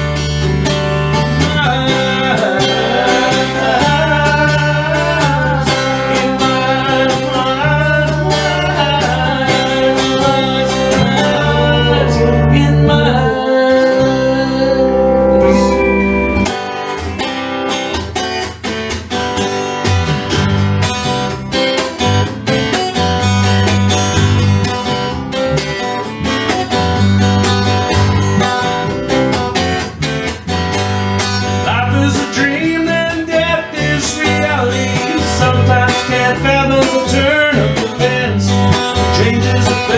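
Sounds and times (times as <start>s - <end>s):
guitar: 0.0s - 39.9s
steady bass line: 10.4s - 16.5s.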